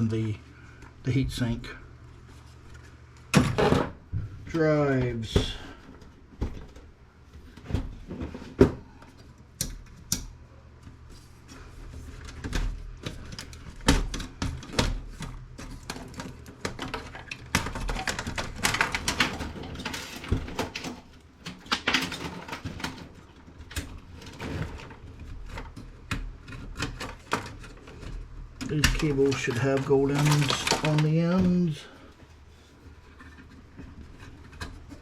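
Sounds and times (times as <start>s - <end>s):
computer parts clicking and knocking: 12.2s - 31.7s.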